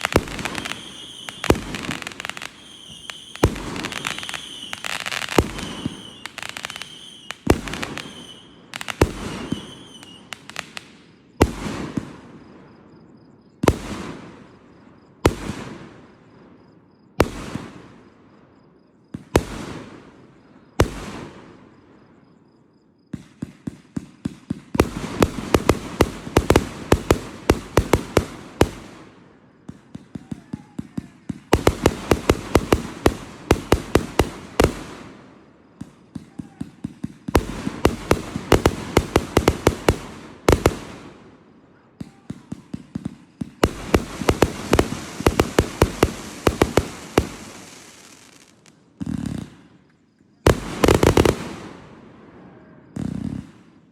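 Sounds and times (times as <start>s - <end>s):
fireworks whistling: 0.0s - 12.8s, 24.6s - 41.4s, 42.0s - 52.0s, 52.9s - 53.9s
fireworks bursting with bangs: 0.0s - 22.2s, 23.1s - 53.9s.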